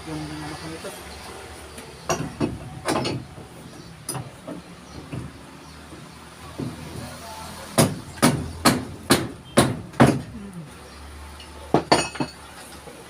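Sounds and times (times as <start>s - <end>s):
hammer striking nails in wood: 7.8s - 10.3s.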